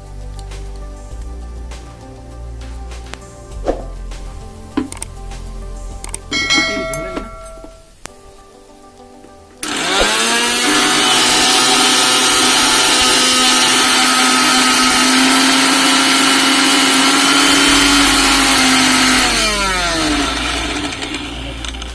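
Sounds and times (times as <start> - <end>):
mixer grinder motor whine: 9.6 - 21.9.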